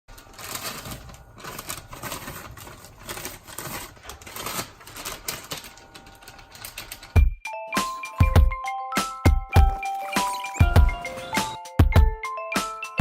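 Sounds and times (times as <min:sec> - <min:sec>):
rapid irregular clicking and clattering: 0:00.1 - 0:07.2.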